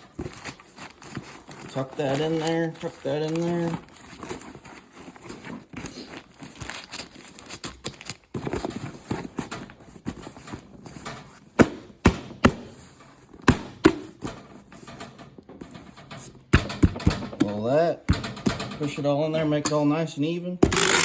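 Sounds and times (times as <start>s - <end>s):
packing paper rustling: 0.0s - 15.0s
sharp knocks on cardboard box: 11.6s - 12.8s.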